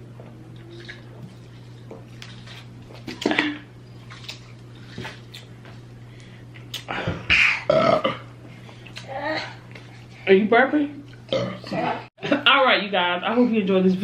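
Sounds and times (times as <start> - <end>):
steady low hum: 0.0 - 14.0
loud burp: 7.4 - 8.3, 11.3 - 11.7.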